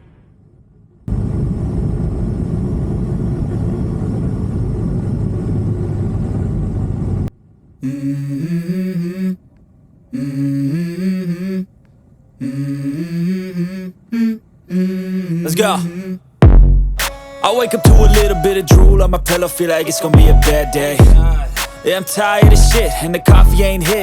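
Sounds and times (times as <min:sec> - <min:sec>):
hummed vocal melody: 0:07.8 - 0:24.0.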